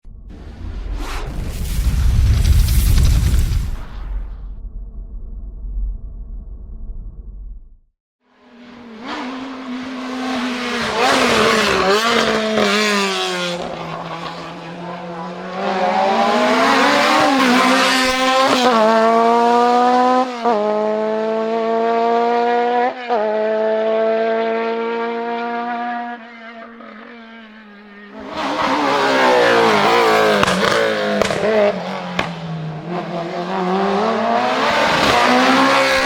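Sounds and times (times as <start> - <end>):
racing car engine revving: 8.5 - 26.1, 28.1 - 36.0.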